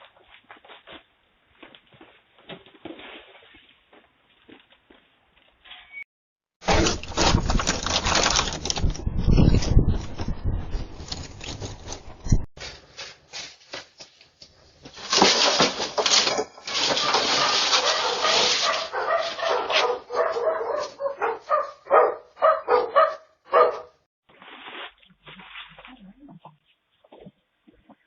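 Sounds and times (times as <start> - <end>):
dog barking: 17.0 - 24.0.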